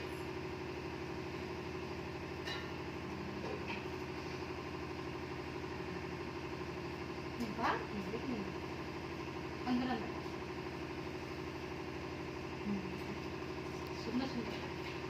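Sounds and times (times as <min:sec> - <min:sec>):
low machine hum: 0:00.0 - 0:15.0.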